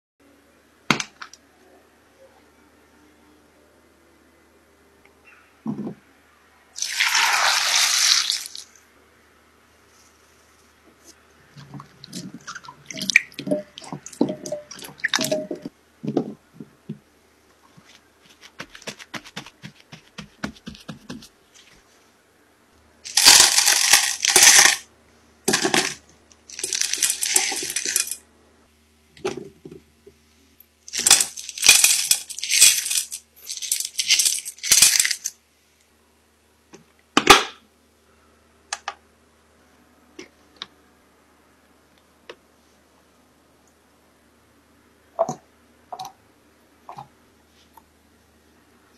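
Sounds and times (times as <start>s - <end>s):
utensils clinking: 12.1s - 15.7s.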